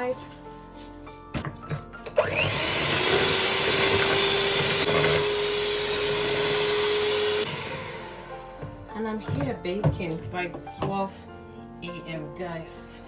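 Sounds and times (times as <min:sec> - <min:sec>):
electric hand mixer whining: 0:02.0 - 0:08.8.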